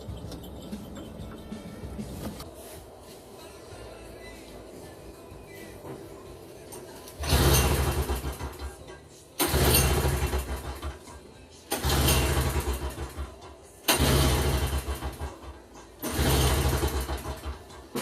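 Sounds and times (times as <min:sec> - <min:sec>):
engine cranking without starting: 0:00.0 - 0:02.4, 0:07.1 - 0:08.8, 0:09.4 - 0:11.1, 0:11.7 - 0:18.0.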